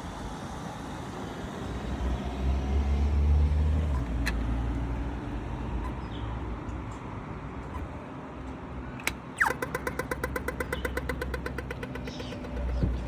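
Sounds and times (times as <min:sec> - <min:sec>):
road traffic rumble: 0:00.0 - 0:13.0
rapid even ticking: 0:09.4 - 0:13.0.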